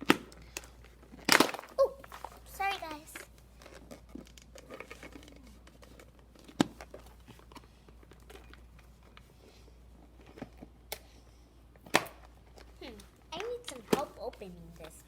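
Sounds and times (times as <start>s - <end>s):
plastic packaging rustling: 0.3s - 11.2s.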